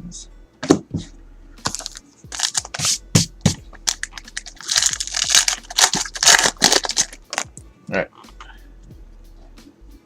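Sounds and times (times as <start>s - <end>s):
trading cards rustling and clicking: 1.7s - 7.6s.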